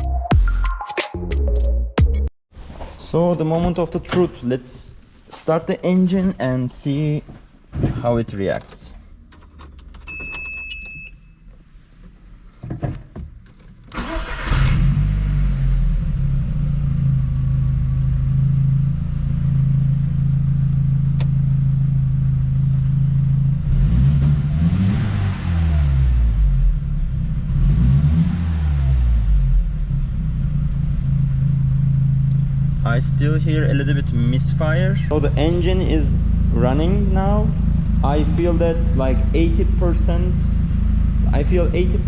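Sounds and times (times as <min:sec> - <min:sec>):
engine cranking and starting: 0:13.4 - 0:15.4
engine idling and revving: 0:13.8 - 0:42.0.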